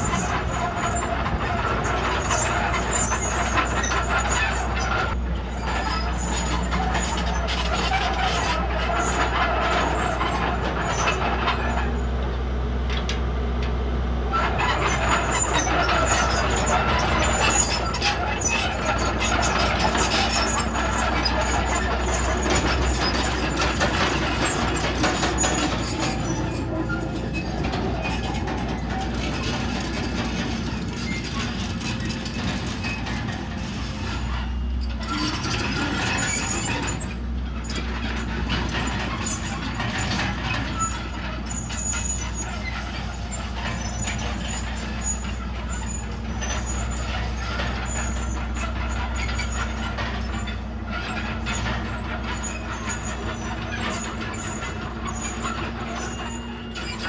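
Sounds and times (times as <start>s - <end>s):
diesel engine running: 0.0s - 57.0s
metallic clanks and rattles: 14.4s - 34.3s.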